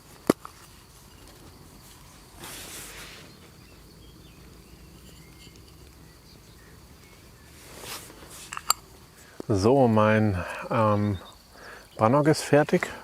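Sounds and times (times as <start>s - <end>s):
faint bird chirps: 2.8s - 9.4s, 10.2s - 12.2s
brief rustling: 7.6s - 8.8s.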